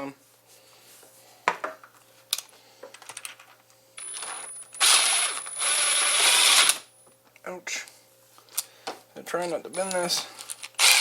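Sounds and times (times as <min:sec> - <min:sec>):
power drill whining and cutting: 0:04.2 - 0:06.9, 0:10.8 - 0:11.0.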